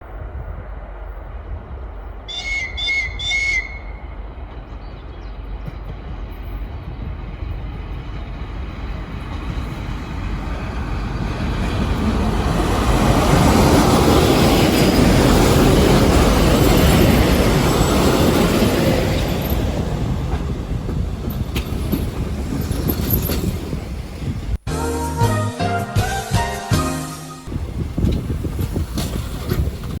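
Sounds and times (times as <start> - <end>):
train rumbling past: 0.0 - 30.0
train whistle toots: 2.3 - 4.1, 24.7 - 27.5.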